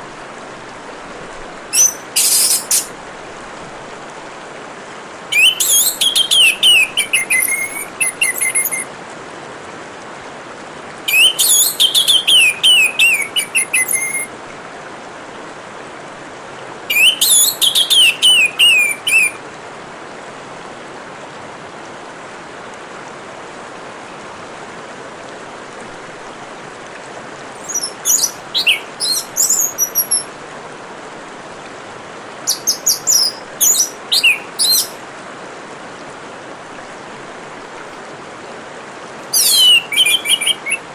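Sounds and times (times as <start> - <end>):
water trickling: 0.0 - 3.9, 5.3 - 8.9, 25.8 - 35.2
thrush singing: 1.7 - 2.9, 5.3 - 8.9, 11.1 - 14.3, 27.6 - 30.3, 32.5 - 35.0, 39.2 - 40.9.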